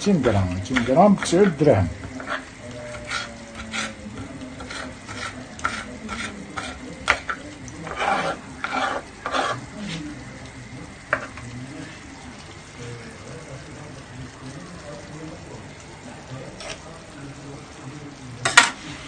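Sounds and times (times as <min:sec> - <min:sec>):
vegetables sizzling: 0:00.0 - 0:19.0
utensil scraping a pot: 0:00.2 - 0:10.0, 0:16.5 - 0:16.9.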